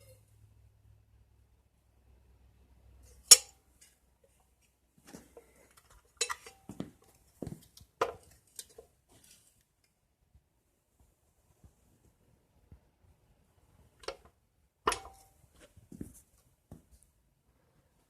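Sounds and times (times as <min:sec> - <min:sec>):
light metal clinks and knocks: 0:05.0 - 0:09.4.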